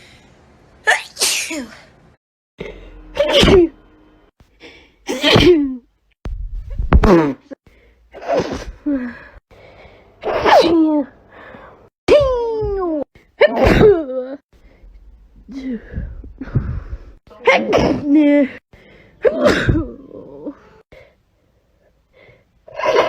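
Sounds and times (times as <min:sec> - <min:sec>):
person sneezing: 0:05.1 - 0:05.8, 0:08.2 - 0:08.8, 0:10.2 - 0:11.0.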